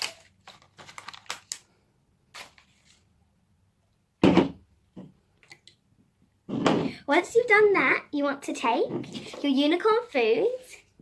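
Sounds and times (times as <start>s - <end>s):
jug thunk on table: 4.2s - 4.6s.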